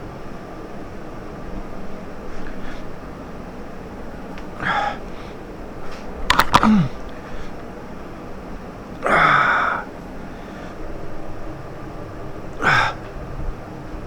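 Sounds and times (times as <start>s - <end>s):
man breathing: 2.2s - 3.1s, 4.4s - 7.7s, 9.0s - 11.3s, 12.5s - 13.4s
mouth clicks: 6.3s - 7.2s
man grunting: 6.4s - 7.0s, 9.0s - 9.9s, 12.6s - 13.1s
breathy sigh: 9.0s - 10.8s, 12.5s - 13.2s.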